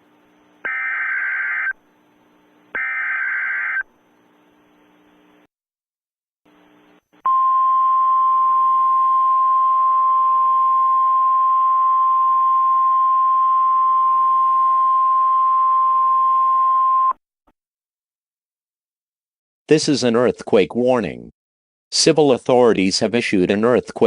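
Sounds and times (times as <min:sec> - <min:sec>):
faint static: 0:00.0 - 0:05.5.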